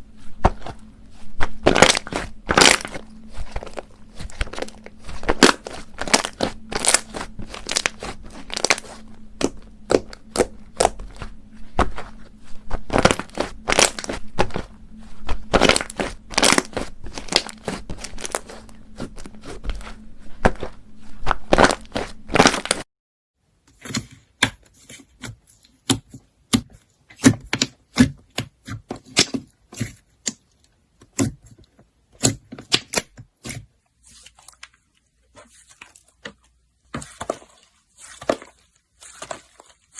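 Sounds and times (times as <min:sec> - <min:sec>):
slime crackling and popping: 0:01.4 - 0:14.7, 0:15.3 - 0:22.8, 0:25.8 - 0:31.4, 0:32.2 - 0:33.6.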